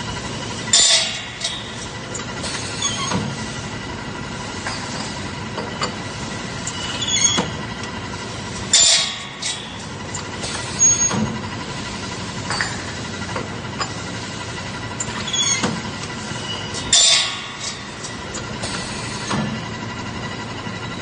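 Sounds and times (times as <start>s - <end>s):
machine hum: 0.0s - 21.0s
sharp metallic clanks: 0.7s - 1.9s, 8.7s - 9.8s, 16.4s - 19.4s.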